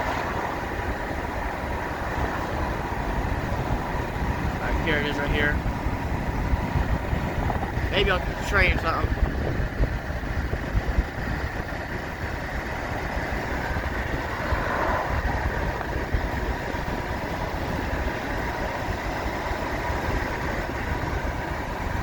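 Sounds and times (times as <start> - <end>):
car road and wind noise: 0.0 - 22.0.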